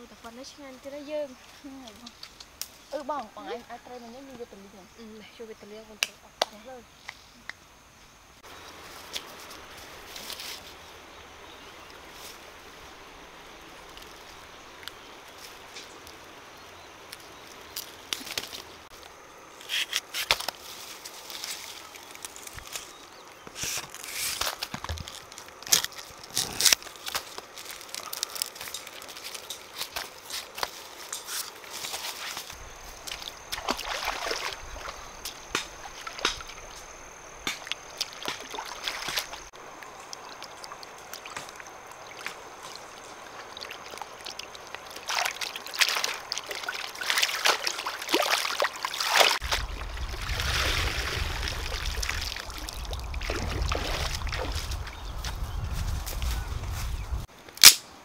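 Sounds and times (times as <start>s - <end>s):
water sloshing and trickling: 23.8s - 55.5s.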